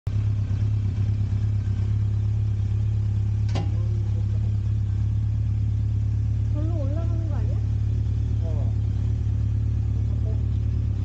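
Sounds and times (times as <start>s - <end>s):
motorcycle engine running: 0.0s - 11.0s
sharp click: 3.4s - 3.8s.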